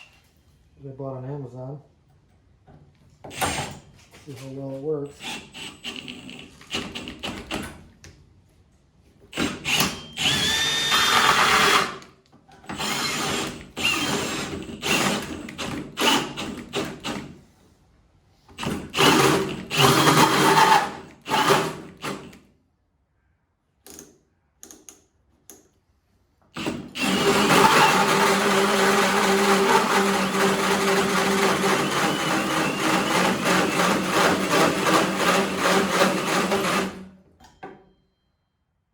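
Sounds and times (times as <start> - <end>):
power drill with hole saw cutting: 3.3 - 3.8, 5.2 - 7.6, 9.3 - 12.1, 12.7 - 17.3, 18.6 - 22.4, 26.6 - 37.1.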